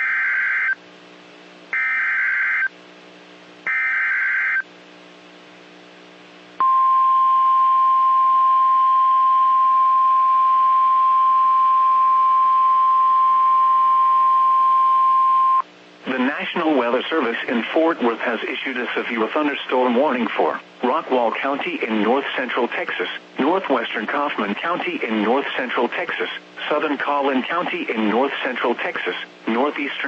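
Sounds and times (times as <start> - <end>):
steady warning alarm tone: 0.0 - 0.8, 1.8 - 2.7, 3.7 - 4.7.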